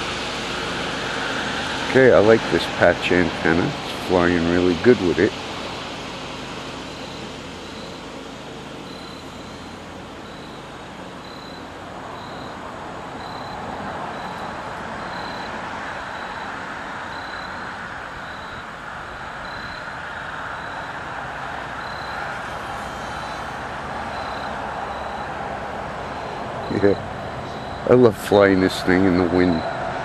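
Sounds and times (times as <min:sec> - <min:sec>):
faint high beep: 0:06.9 - 0:08.2, 0:08.8 - 0:20.0, 0:20.6 - 0:21.0, 0:21.8 - 0:25.4, 0:26.1 - 0:29.8.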